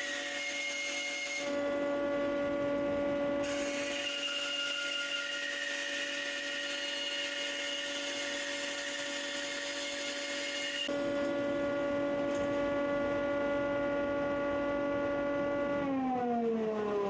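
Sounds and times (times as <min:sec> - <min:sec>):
saw and dust extractor hum: 0:00.0 - 0:17.0
bandsaw cutting wood: 0:03.4 - 0:11.0.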